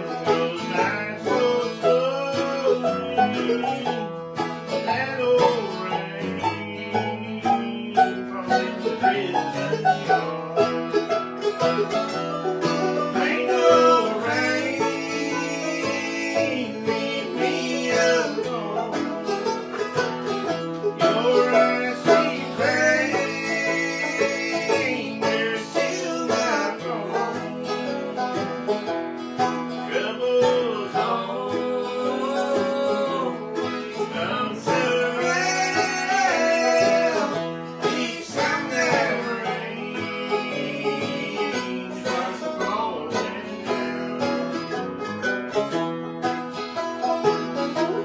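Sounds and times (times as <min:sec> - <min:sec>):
banjo and guitar picking: 0:00.0 - 0:48.0
bluegrass band playing: 0:00.0 - 0:48.0.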